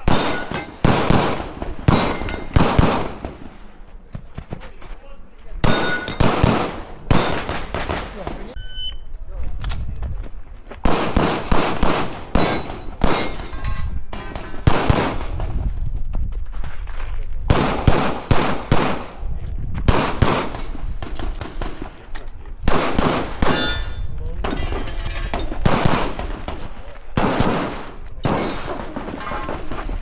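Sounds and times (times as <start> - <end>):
pistol shots with echo: 0.0 - 3.7, 5.6 - 8.6, 10.8 - 13.5, 14.1 - 15.5, 17.5 - 19.2, 19.9 - 22.0, 22.6 - 30.0.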